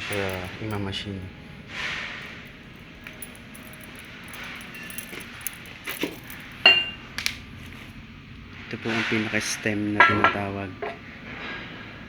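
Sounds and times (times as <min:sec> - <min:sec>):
steel parts clinking and knocking: 0:00.0 - 0:08.0.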